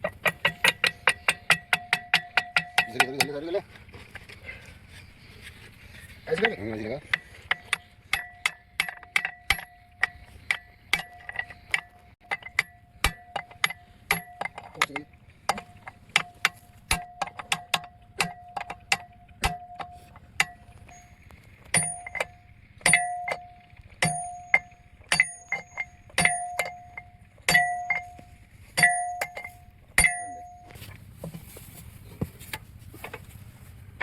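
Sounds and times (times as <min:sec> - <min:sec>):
hammer ringing on metal: 0:21.8 - 0:30.7.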